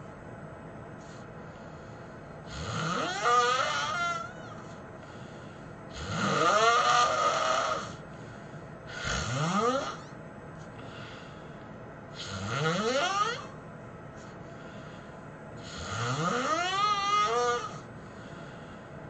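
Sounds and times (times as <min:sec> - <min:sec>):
person snoring heavily: 0:01.6 - 0:08.0, 0:08.8 - 0:10.1, 0:12.1 - 0:13.6, 0:15.6 - 0:18.5.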